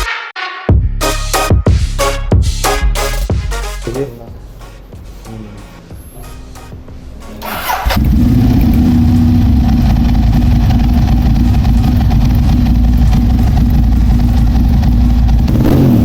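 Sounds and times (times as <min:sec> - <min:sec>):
motorcycle engine running: 0:06.7 - 0:16.0.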